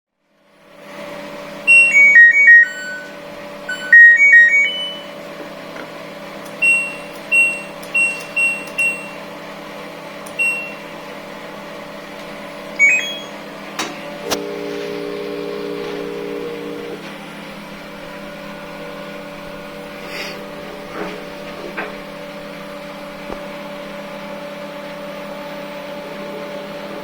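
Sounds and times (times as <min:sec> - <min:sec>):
button press beeps: 0:01.7 - 0:05.1, 0:06.6 - 0:09.2, 0:10.3 - 0:10.8, 0:12.8 - 0:13.4
electronic beeping tune: 0:01.7 - 0:05.2, 0:12.8 - 0:13.5.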